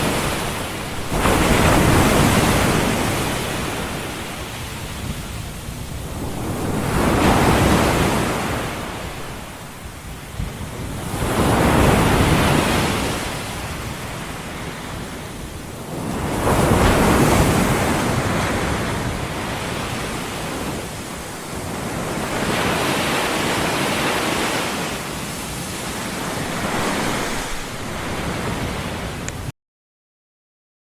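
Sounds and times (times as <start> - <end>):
ocean waves rushing: 0.0 - 29.5.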